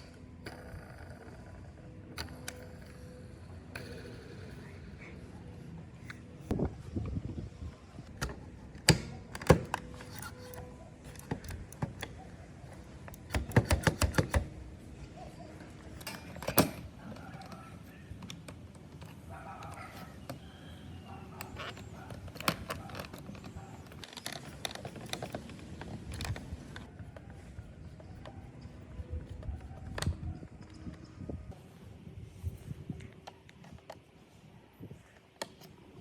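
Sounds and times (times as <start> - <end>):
sharp clicks and knocks: 8.0 - 14.6.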